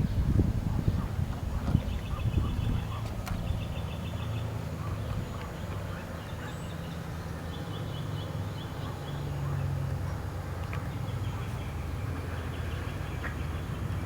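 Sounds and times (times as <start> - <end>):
birds chirping in trills: 0.0 - 9.8.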